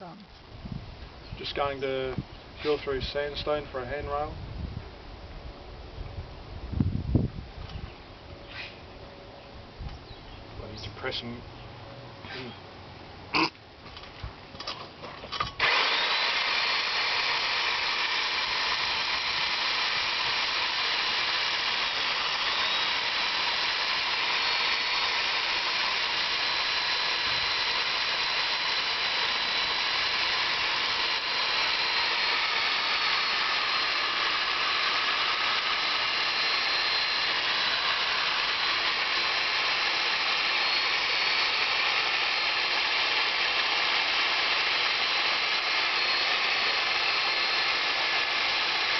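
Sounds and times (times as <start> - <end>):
electric drill cutting stone: 15.4 - 48.9.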